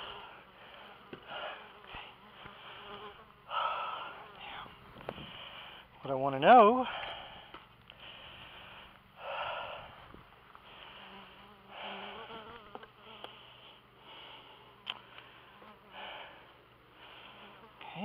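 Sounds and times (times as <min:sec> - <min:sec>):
bee flying close by: 0:00.0 - 0:03.4, 0:10.8 - 0:13.4
bees buzzing: 0:00.0 - 0:05.7, 0:10.5 - 0:18.0.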